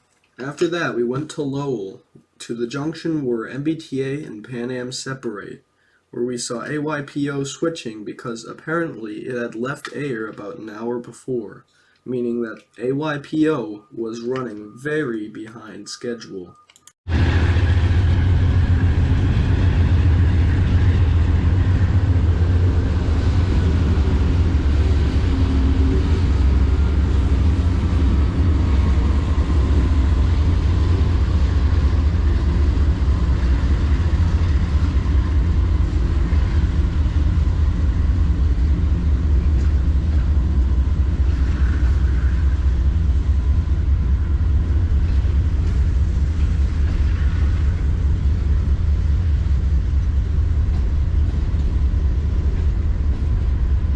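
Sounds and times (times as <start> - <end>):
faint falling whine: 0.0 - 53.9
diesel locomotive rumble: 17.1 - 53.9.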